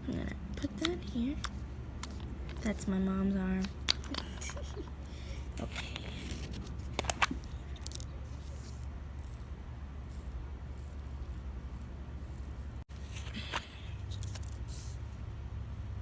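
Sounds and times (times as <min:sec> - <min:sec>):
plastic containers clicking: 0:03.6 - 0:04.9.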